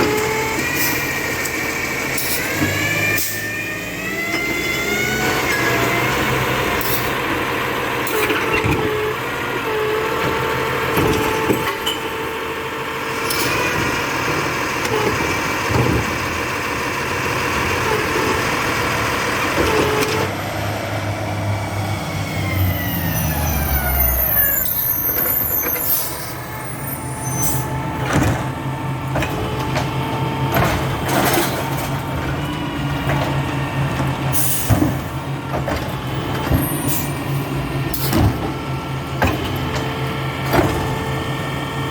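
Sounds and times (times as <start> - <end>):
diesel truck engine: 0.0 - 41.9
hydraulic whine: 17.6 - 41.9.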